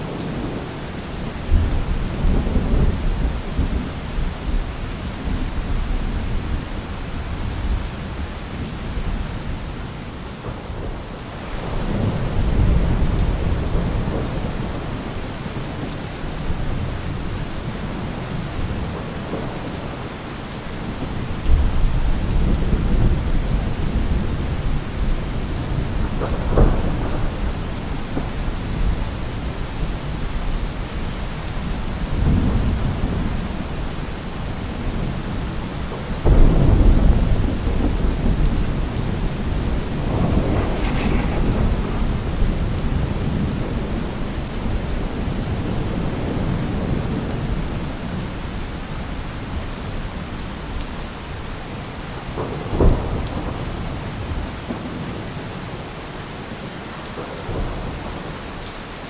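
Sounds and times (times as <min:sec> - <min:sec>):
heavy rain: 0:00.0 - 0:59.0
deep thunder rumbling: 0:20.9 - 0:33.8, 0:34.5 - 0:48.2
sharp thunder crack: 0:36.2 - 0:44.1.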